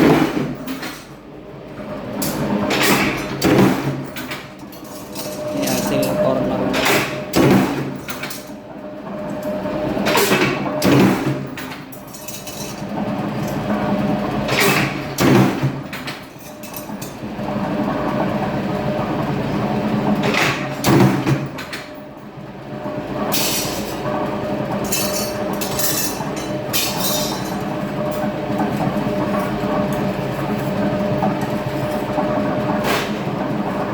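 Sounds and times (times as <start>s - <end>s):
machine motor hum: 1.2s - 11.5s.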